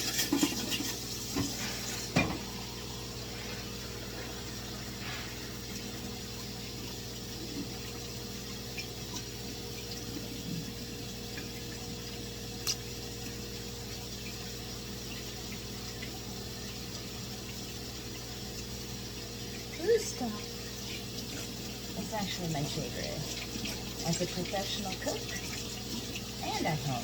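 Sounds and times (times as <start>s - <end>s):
tap water running into sink: 0.0s - 27.0s.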